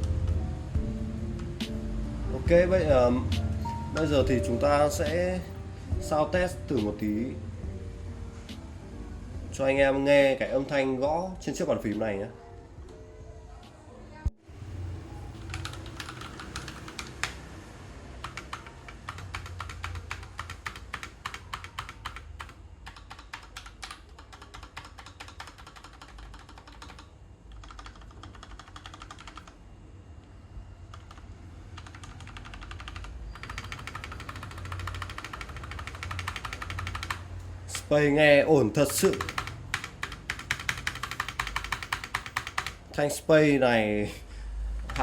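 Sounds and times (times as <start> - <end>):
mechanical keyboard typing: 15.3 - 17.5, 18.2 - 29.6, 30.8 - 37.4, 38.8 - 42.8, 44.8 - 45.0.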